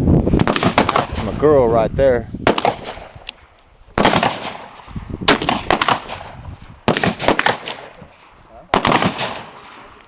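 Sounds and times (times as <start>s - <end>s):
gunshots: 0.4s - 1.4s, 2.4s - 3.1s, 4.0s - 10.0s.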